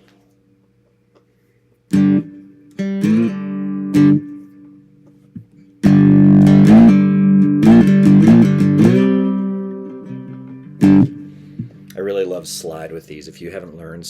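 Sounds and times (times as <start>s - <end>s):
strummed cigar box guitar: 1.9s - 12.8s.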